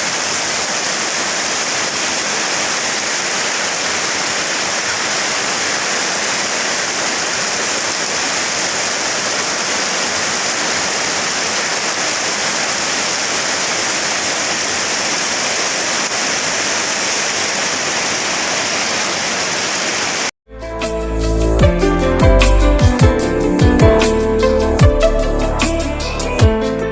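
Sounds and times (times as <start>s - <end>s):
heavy rain in wind: 0.0s - 20.3s.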